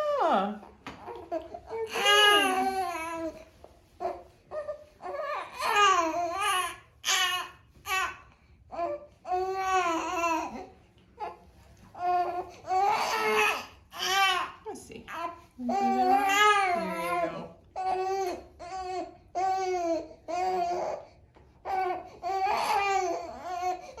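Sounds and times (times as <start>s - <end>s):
infant fussing and babbling: 1.1s - 8.2s, 12.0s - 21.0s.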